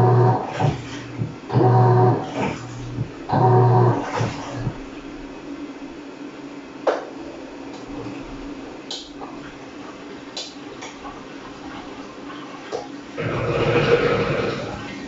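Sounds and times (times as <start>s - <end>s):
washing machine water sloshing: 0.0s - 5.4s
washing machine low hum: 0.0s - 15.0s.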